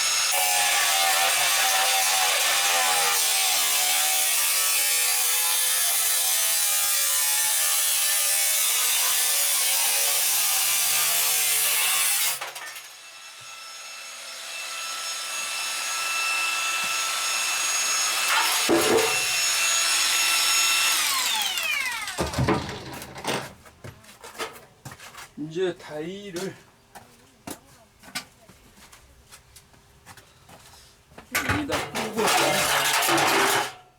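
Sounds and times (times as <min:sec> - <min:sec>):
power tool cutting metal: 0:00.0 - 0:23.4.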